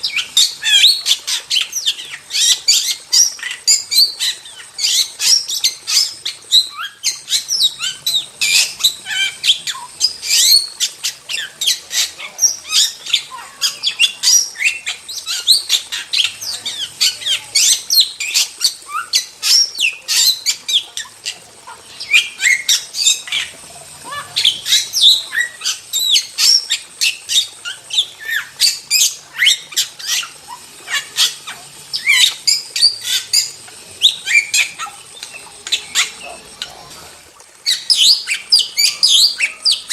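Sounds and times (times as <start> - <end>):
starling singing: 0.0 - 39.9.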